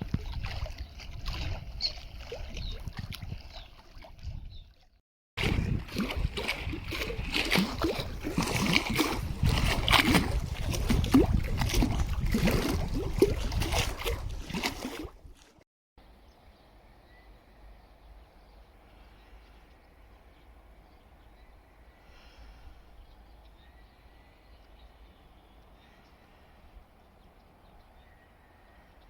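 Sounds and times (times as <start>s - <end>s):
water sloshing and splashing: 0.0s - 15.6s.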